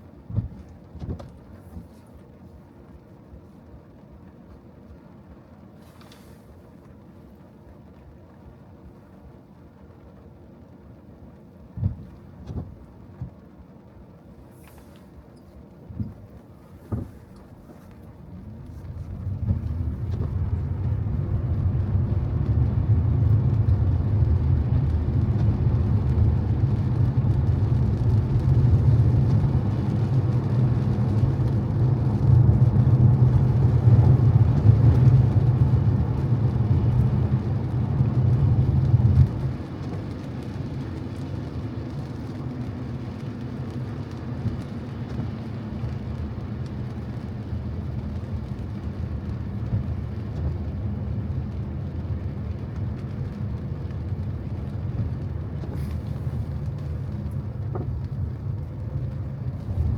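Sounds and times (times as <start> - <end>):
engine and tyres rumbling: 0.0 - 59.9
hiss of rain and spray: 0.0 - 59.9.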